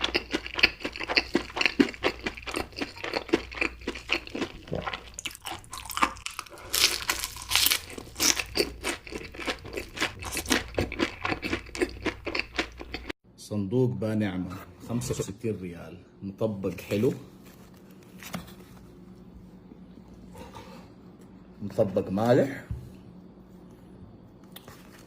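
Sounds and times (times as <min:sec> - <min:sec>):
chewing crunchy food: 0:00.0 - 0:13.2.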